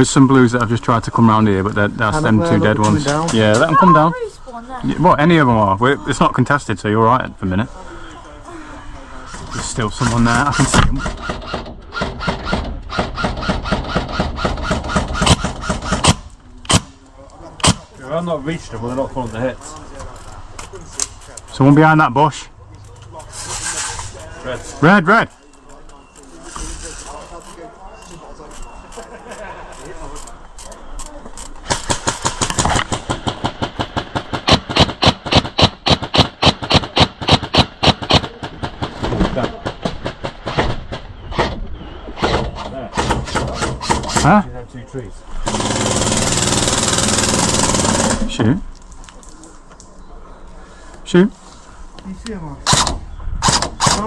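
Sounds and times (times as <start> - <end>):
sharp crack: 9.5 - 18.0, 31.4 - 41.6
airsoft gun rapid fire: 10.0 - 16.9, 31.6 - 40.7, 45.4 - 48.3.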